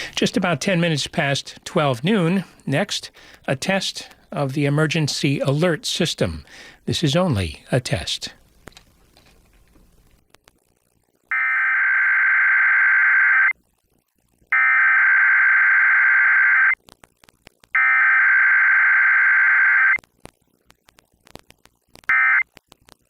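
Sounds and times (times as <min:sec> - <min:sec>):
faint radio static clicks: 0:07.4 - 0:11.6, 0:16.3 - 0:18.2, 0:18.8 - 0:23.0
screeching digital data tones: 0:14.6 - 0:16.8, 0:17.8 - 0:20.0.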